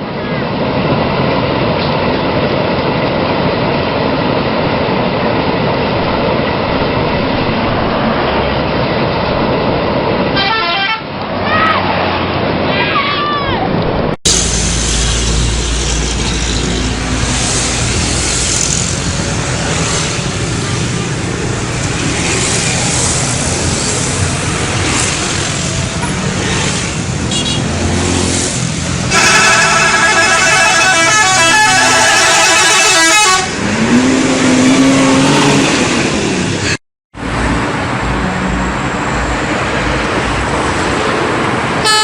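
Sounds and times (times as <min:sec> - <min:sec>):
traffic noise: 0:00.0 - 0:42.0
bus musical horn tune: 0:10.4 - 0:11.0, 0:29.1 - 0:33.6
low horn tone: 0:29.1 - 0:33.6.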